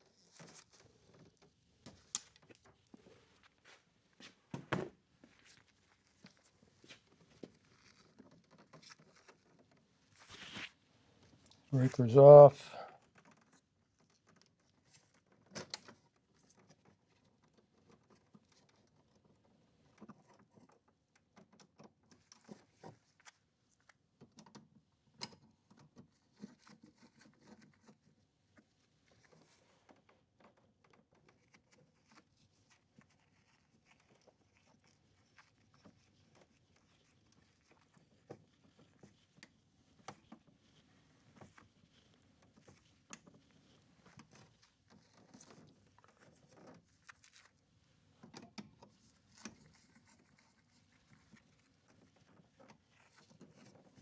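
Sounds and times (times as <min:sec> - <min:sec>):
faint clicks and taps: 0:13.2 - 0:54.0.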